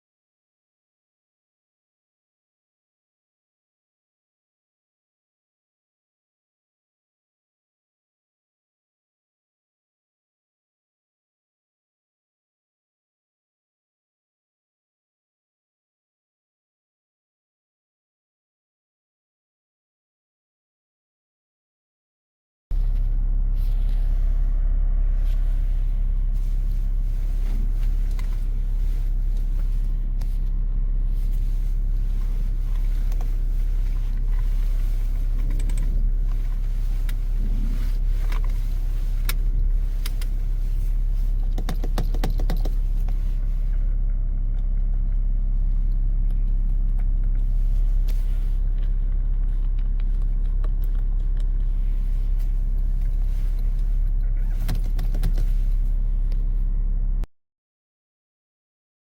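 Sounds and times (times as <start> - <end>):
car running with low hum: 22.7 - 57.3.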